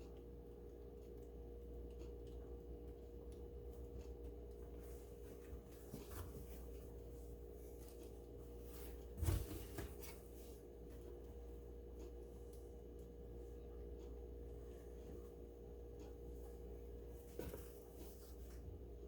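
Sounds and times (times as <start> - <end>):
low electrical hum: 0.0 - 19.0
handling noise rubbing and rustling: 4.8 - 11.3, 17.2 - 19.0.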